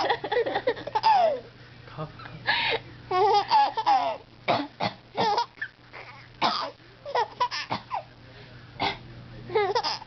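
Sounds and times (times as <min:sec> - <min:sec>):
baby laughing: 0:00.0 - 0:01.5, 0:03.1 - 0:04.2, 0:05.2 - 0:06.3, 0:07.0 - 0:07.8, 0:09.5 - 0:10.0.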